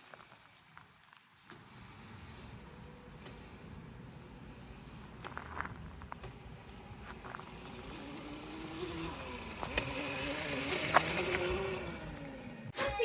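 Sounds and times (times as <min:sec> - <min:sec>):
electric dirt bike motor whining: 0:01.5 - 0:12.8.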